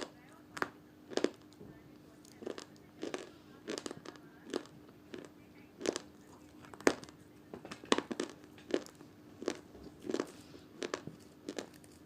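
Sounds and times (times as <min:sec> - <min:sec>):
slate chips crunched between teeth: 0:07.9 - 0:12.0.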